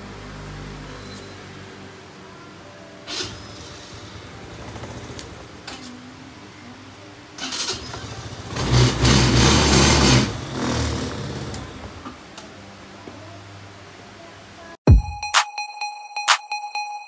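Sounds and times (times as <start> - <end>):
scooter engine revving and idling: 3.1 - 5.6, 7.4 - 12.1.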